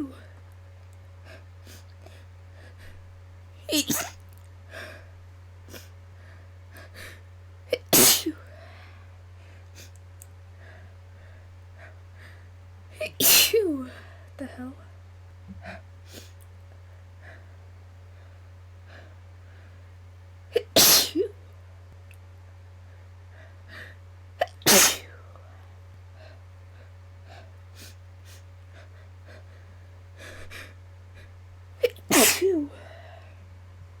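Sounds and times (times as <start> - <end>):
steady low hum: 0.0 - 34.0
woman sneezing: 3.7 - 4.2, 7.7 - 8.5, 13.0 - 14.0, 20.6 - 21.4, 24.4 - 25.2, 31.8 - 32.8.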